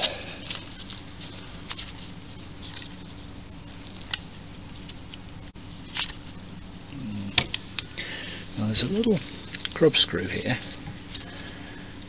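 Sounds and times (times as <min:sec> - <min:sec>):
steady low hum: 0:00.0 - 0:12.0.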